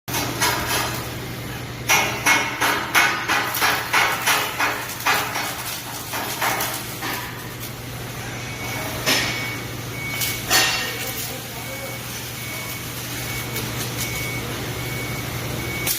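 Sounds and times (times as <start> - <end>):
steady electrical hum: 0.1 - 15.9
sharp metallic knocks: 1.9 - 7.3.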